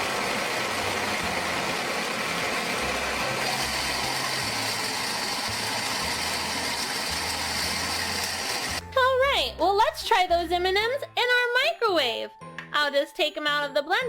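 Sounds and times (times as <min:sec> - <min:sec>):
toy blender motor whirring: 0:00.0 - 0:08.8.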